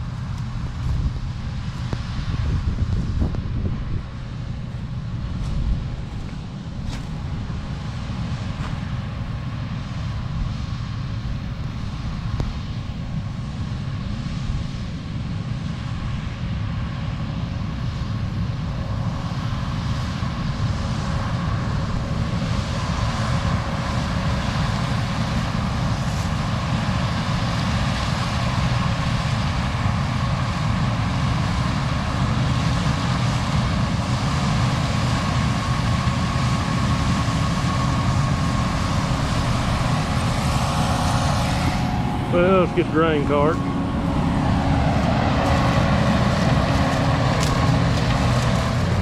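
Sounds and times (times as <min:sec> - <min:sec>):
heavy diesel engine running: 0:00.0 - 0:49.0.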